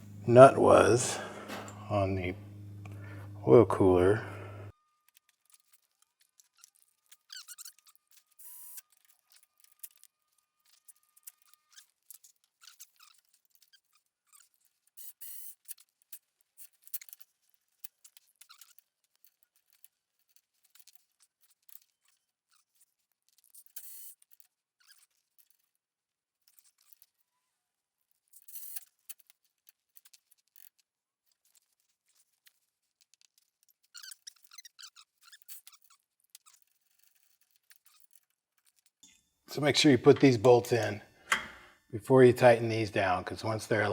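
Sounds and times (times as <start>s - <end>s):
metal brackets and bolts rattling: 39.5s - 41.6s.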